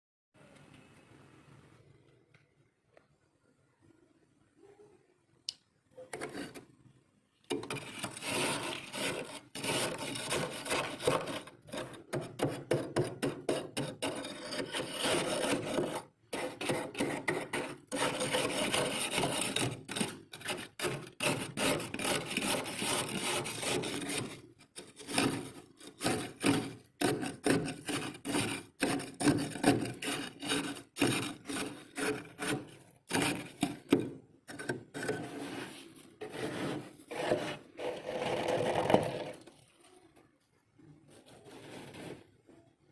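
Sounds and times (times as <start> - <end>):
frost being scraped: 7.7 - 39.5, 41.2 - 42.3.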